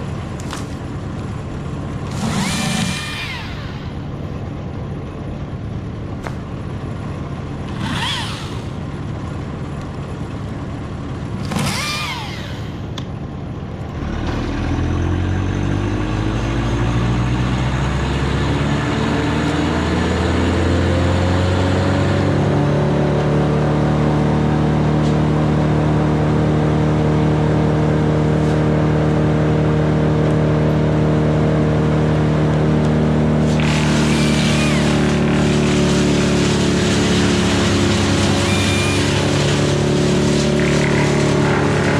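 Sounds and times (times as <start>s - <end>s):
engine speeding up: 2.0s - 4.5s, 7.6s - 9.0s, 11.4s - 13.0s, 14.0s - 41.9s.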